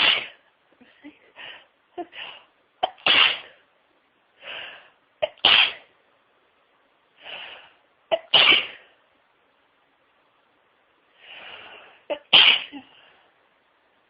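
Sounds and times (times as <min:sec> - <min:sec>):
person sneezing: 0:00.0 - 0:00.4, 0:02.8 - 0:03.6, 0:05.2 - 0:05.9, 0:08.1 - 0:08.9, 0:12.1 - 0:13.0.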